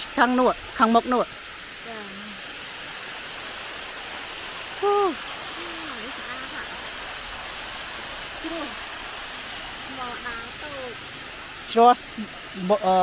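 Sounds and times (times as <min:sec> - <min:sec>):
waterfall rushing: 0:00.0 - 0:13.0
person vocal sound: 0:04.8 - 0:06.6.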